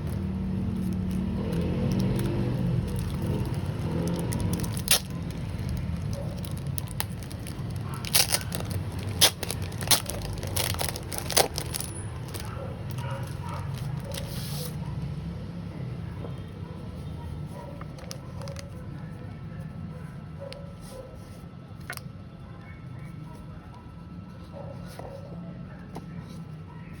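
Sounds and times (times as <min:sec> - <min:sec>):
packaging clicks and crackles: 0:00.0 - 0:14.3, 0:17.8 - 0:18.8.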